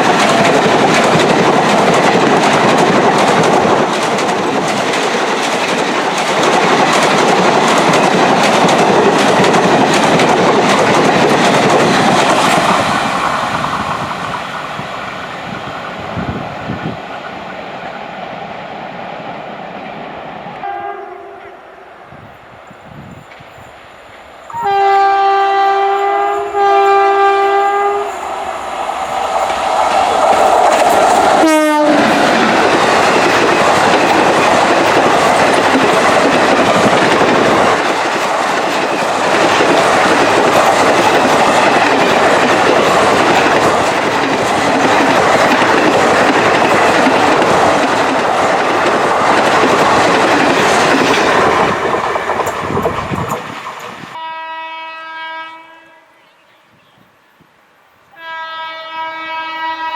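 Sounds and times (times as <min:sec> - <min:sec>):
train wheels clattering over rails: 0:00.0 - 0:17.6, 0:26.3 - 0:54.2
train horn blasts: 0:20.6 - 0:21.9, 0:24.5 - 0:28.3, 0:31.4 - 0:32.2, 0:54.2 - 0:56.2, 0:58.1 - 0:59.9.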